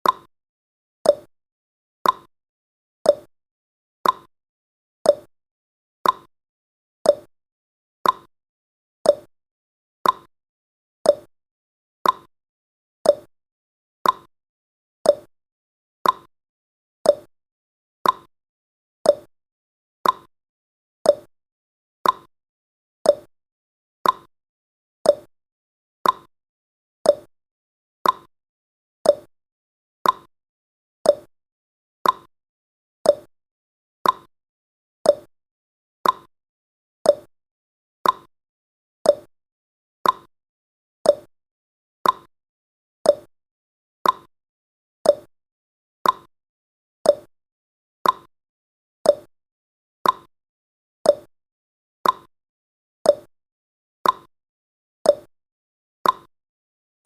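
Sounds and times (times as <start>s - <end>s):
timer ticking: 0.0s - 0.3s, 1.1s - 1.3s, 2.0s - 2.3s, 3.1s - 3.3s, 4.0s - 4.3s, 5.1s - 5.3s, 6.0s - 6.3s, 7.1s - 7.3s, 8.0s - 8.3s, 9.1s - 9.3s, 10.0s - 10.3s, 11.1s - 11.3s, 12.0s - 12.3s, 13.1s - 13.3s, 14.0s - 14.3s, 15.1s - 15.3s, 16.0s - 16.3s, 17.1s - 17.3s, 18.0s - 18.3s, 19.1s - 19.3s, 20.0s - 20.3s, 21.1s - 21.3s, 22.0s - 22.3s, 23.1s - 23.3s, 24.0s - 24.3s, 25.1s - 25.3s, 26.0s - 26.3s, 27.1s - 27.3s, 28.0s - 28.3s, 29.0s - 29.3s, 30.0s - 30.3s, 31.1s - 31.3s, 32.0s - 32.3s, 33.1s - 33.3s, 34.0s - 34.3s, 35.1s - 35.3s, 36.0s - 36.3s, 37.1s - 37.3s, 38.0s - 38.3s, 39.1s - 39.3s, 40.0s - 40.3s, 41.1s - 41.3s, 42.0s - 42.3s, 43.1s - 43.3s, 44.0s - 44.3s, 45.1s - 45.3s, 46.0s - 46.3s, 47.1s - 47.3s, 48.0s - 48.3s, 49.1s - 49.3s, 50.0s - 50.3s, 51.1s - 51.3s, 52.0s - 52.3s, 53.1s - 53.3s, 54.0s - 54.3s, 55.1s - 55.3s, 56.0s - 56.3s.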